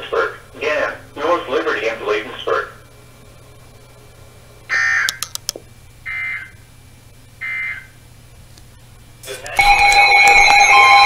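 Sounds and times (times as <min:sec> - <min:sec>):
shrill multi-tone alert alarm: 0:06.0 - 0:06.6, 0:07.4 - 0:07.9, 0:09.5 - 0:11.0.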